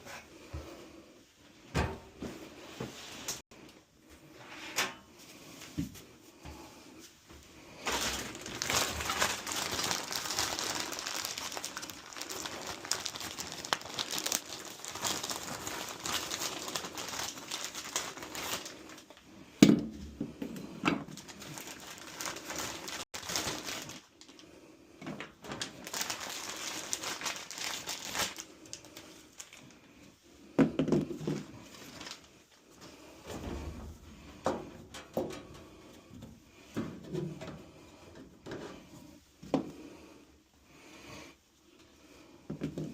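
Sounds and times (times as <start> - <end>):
rustling and crinkling: 5.2 - 19.2, 20.0 - 30.1, 30.8 - 39.8.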